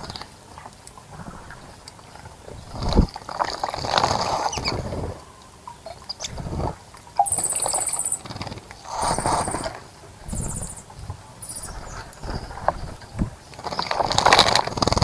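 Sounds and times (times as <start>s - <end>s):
birds splashing in water: 0.0s - 15.0s
high buzzy bird trills: 7.2s - 14.5s.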